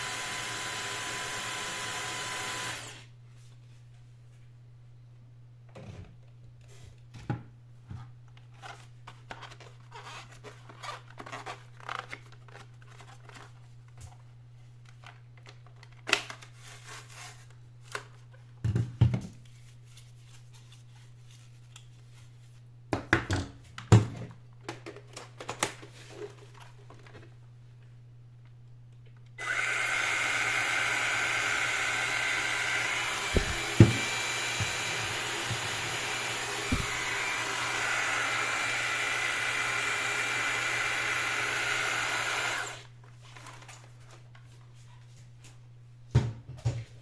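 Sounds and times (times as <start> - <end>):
plastic parts clicking and scraping: 8.3 - 14.2.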